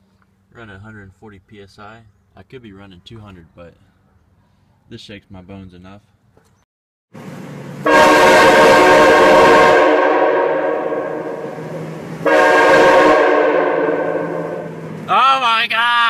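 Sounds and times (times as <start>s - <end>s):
train horn blasting chord: 7.8s - 14.9s.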